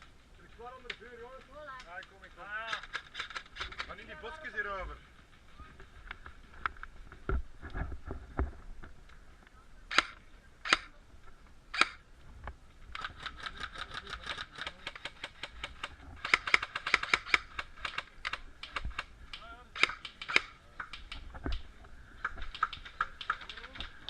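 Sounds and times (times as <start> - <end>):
airsoft gun single shots: 11.7 - 12.0
airsoft gun full-auto bursts: 13.0 - 19.0.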